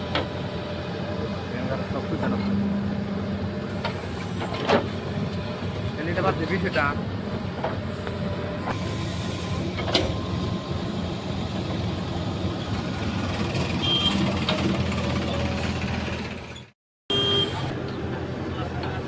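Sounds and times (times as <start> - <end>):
diesel machinery running: 0.0 - 19.0
high beep: 17.1 - 17.6.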